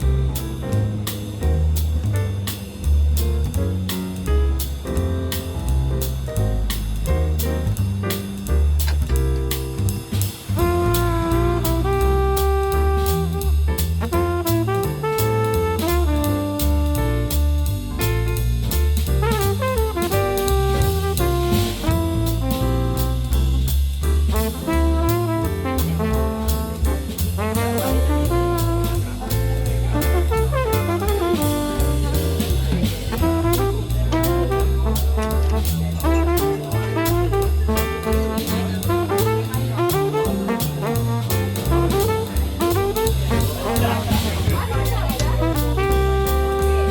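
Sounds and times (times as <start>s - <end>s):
bass line: 0.0s - 46.9s
drum kit beat: 0.0s - 46.9s
horns playing melody: 10.6s - 17.9s, 19.3s - 23.5s, 24.3s - 26.8s, 27.4s - 29.4s, 30.0s - 46.9s.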